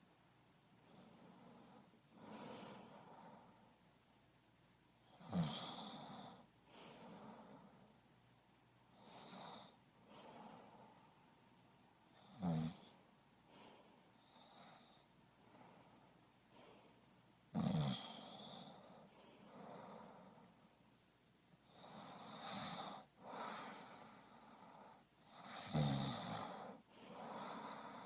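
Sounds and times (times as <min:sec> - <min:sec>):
deep breathing: 0:00.8 - 0:04.0, 0:05.7 - 0:08.0, 0:08.9 - 0:11.4, 0:12.9 - 0:17.2, 0:18.0 - 0:20.8, 0:21.7 - 0:25.2, 0:26.4 - 0:28.0.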